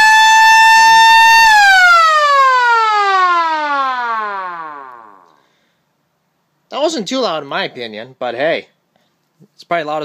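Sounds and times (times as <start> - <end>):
mechanical motor siren wailing: 0.0 - 5.4.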